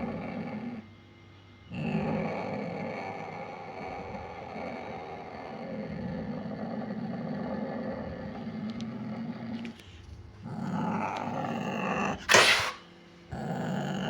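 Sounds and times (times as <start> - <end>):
wild cat growling: 0.0 - 0.8, 1.7 - 14.0
wild cat hissing: 10.5 - 14.0.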